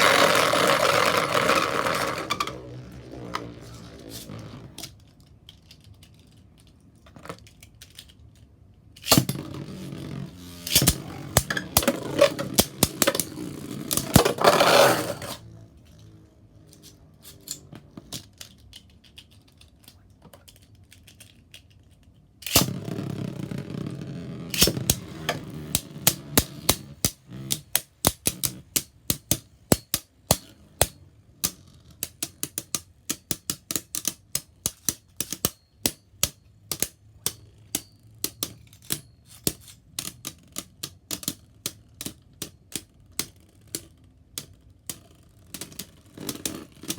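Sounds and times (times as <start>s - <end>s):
spinning tops whirring: 0.0s - 4.8s, 9.3s - 15.4s.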